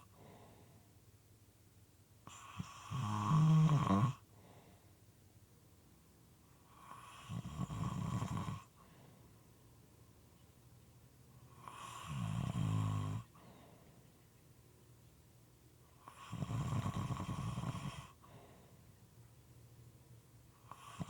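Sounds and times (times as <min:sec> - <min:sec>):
quiet breathing: 0:00.0 - 0:01.2, 0:02.2 - 0:05.2, 0:06.4 - 0:15.1, 0:15.8 - 0:21.0
person snoring: 0:02.3 - 0:04.2.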